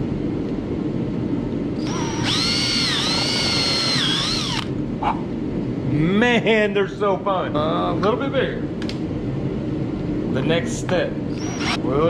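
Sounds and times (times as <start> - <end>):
steady low hum: 0.0 - 12.0
power drill whining through plastic: 1.8 - 4.7, 11.4 - 11.8.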